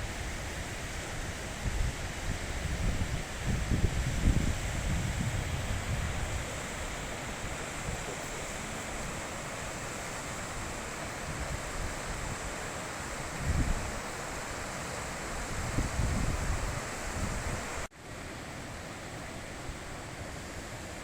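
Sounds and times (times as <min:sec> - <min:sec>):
wind buffeting microphone: 0:00.0 - 0:08.4, 0:13.3 - 0:14.0, 0:15.2 - 0:17.9
river rushing over rocks: 0:00.0 - 0:21.0.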